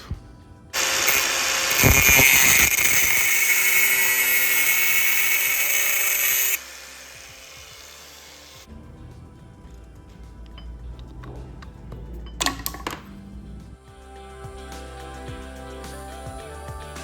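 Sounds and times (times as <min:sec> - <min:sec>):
power tool grinding steel: 0:00.8 - 0:08.7.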